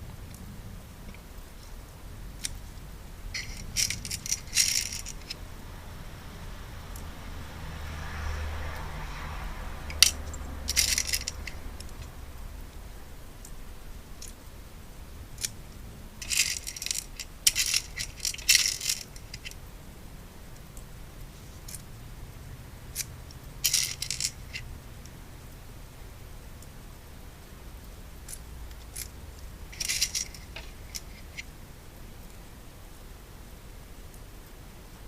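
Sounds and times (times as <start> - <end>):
metal lock pins clinking: 3.4 - 5.4, 9.9 - 12.1, 16.2 - 19.6, 23.0 - 24.6, 29.7 - 31.4.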